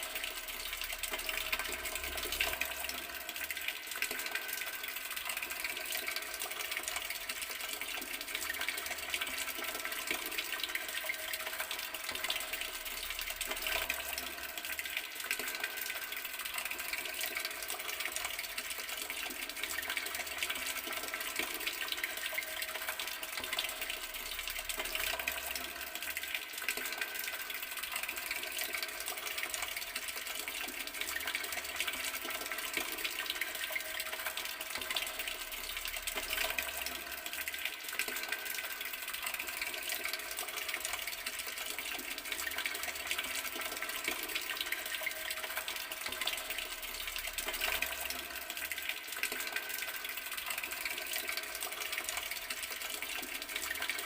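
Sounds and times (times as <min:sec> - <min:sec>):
water running from tap: 0:00.0 - 0:54.0.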